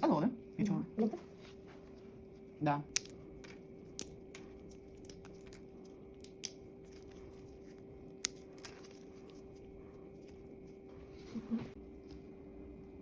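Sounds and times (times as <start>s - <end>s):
faint steady hum: 0.0s - 13.0s
manicure tools clicking: 2.9s - 7.3s.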